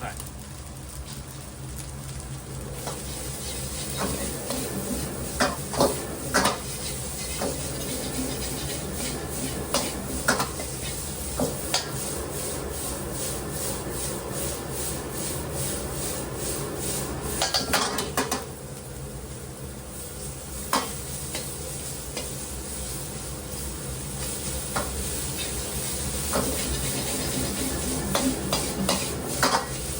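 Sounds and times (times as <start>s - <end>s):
food sizzling in a pan: 0.0s - 29.9s
metal utensil scraping a pan: 26.3s - 29.7s
utensil clanking against pan: 26.3s - 29.8s.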